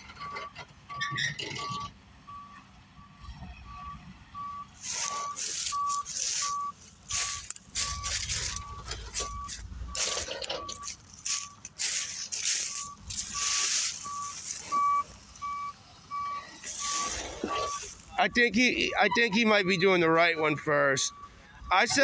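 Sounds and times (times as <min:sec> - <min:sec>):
low engine rumble: 0:00.0 - 0:22.0
reversing alarm beeping: 0:00.1 - 0:11.7, 0:12.4 - 0:22.0.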